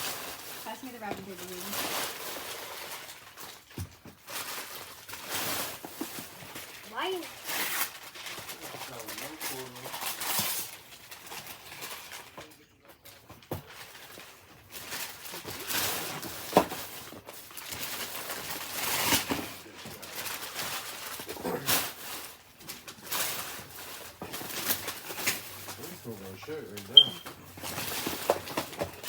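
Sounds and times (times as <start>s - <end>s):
wrapping paper rustling and tearing: 0.0s - 29.0s.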